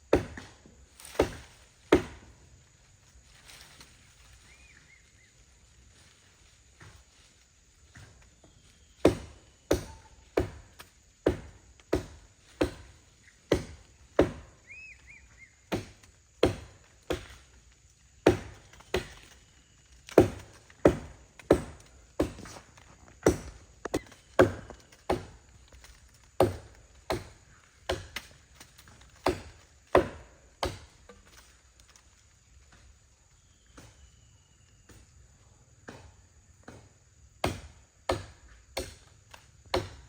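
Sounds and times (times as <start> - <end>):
wood being chopped by hand: 0.1 - 2.3, 9.0 - 12.9, 13.5 - 14.5, 15.7 - 17.4, 18.2 - 19.3, 20.1 - 22.6, 23.2 - 25.4, 26.4 - 31.4, 35.8 - 40.0.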